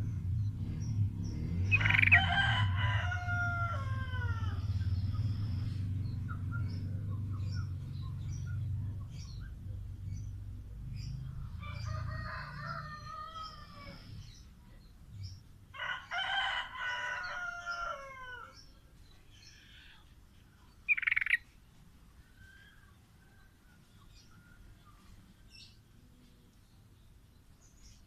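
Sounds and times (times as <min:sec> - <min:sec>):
rooster crowing: 0:01.7 - 0:04.8, 0:11.5 - 0:14.1, 0:15.8 - 0:18.6.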